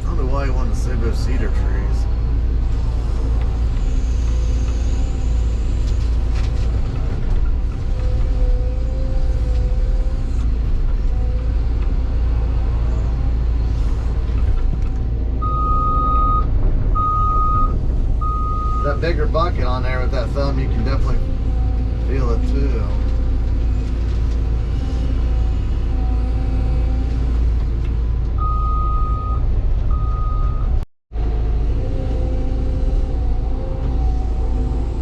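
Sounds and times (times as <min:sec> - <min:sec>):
excavator diesel engine running: 0:00.0 - 0:35.0
electronic warning beep: 0:15.4 - 0:19.0.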